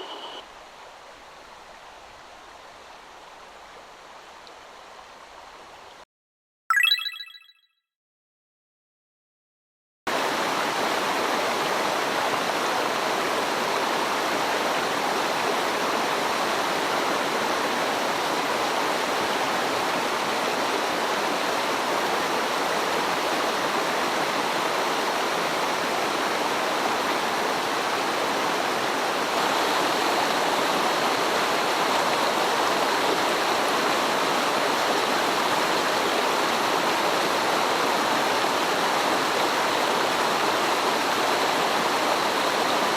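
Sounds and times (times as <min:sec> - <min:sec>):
stream water rushing: 0:10.1 - 0:42.9.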